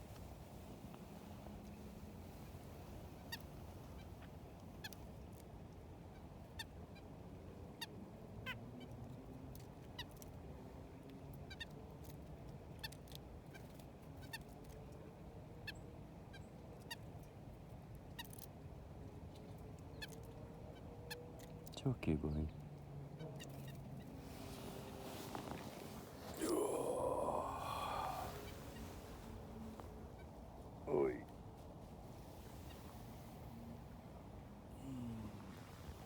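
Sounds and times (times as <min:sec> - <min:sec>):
faint bird calls: 0:00.0 - 0:05.4, 0:19.5 - 0:36.0.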